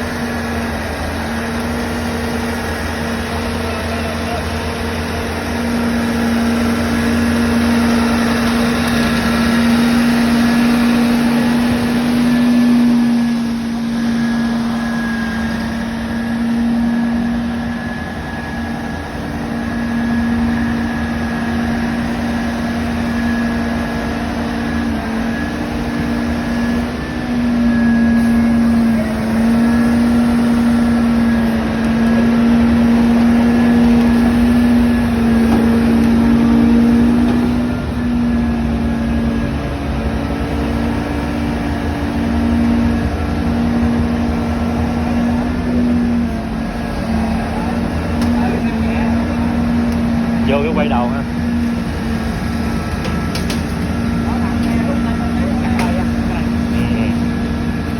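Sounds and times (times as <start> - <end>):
machine engine humming: 0.0 - 57.9.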